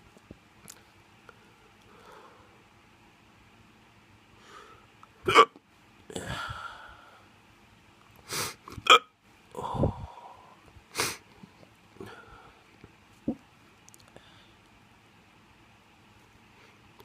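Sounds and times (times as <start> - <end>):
breaths: 1.3 - 2.6, 4.4 - 4.9, 6.2 - 7.4, 9.6 - 11.3, 12.0 - 12.7, 14.1 - 14.7
person hiccupping: 5.2 - 6.5, 8.7 - 9.8.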